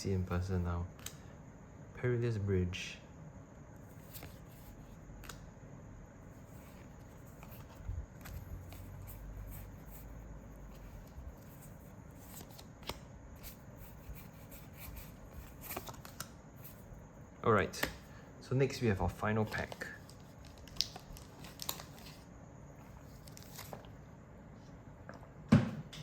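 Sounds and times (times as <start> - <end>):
trading cards flipped by hand: 12.2 - 13.5.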